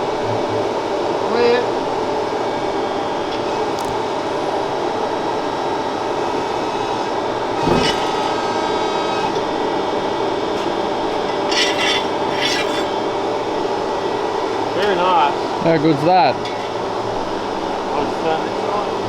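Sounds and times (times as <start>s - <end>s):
workshop machine whirring: 0.0s - 19.0s.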